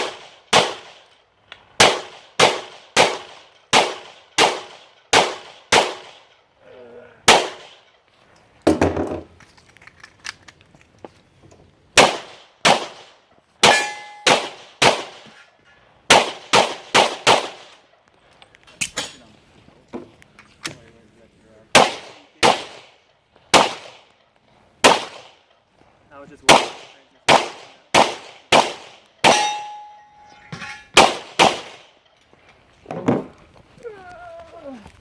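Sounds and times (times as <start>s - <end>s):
pistol shots: 0.0s - 1.1s, 1.8s - 6.3s, 7.3s - 7.8s, 12.0s - 15.3s, 16.1s - 17.8s, 21.7s - 24.1s, 24.8s - 25.4s, 26.4s - 30.3s, 31.0s - 32.0s.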